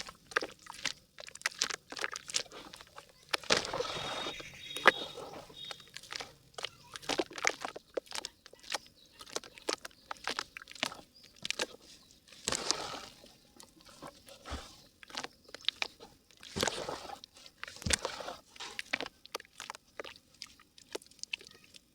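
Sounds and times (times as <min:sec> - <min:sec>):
dry mud crumbling and crackling: 0:00.0 - 0:21.9
gritty rustles: 0:10.1 - 0:19.1.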